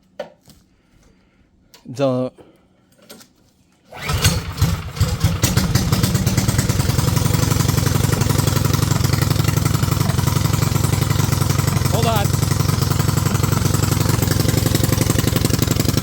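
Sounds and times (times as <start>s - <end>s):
small gasoline engine running: 3.9s - 16.0s.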